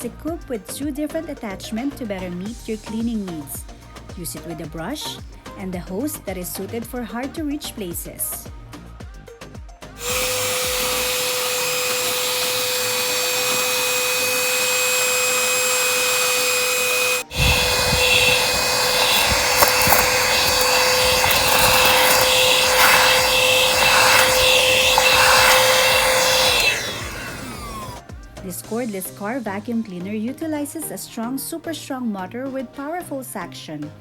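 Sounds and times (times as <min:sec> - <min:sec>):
handheld vacuum cleaner running: 0:10.0 - 0:28.1.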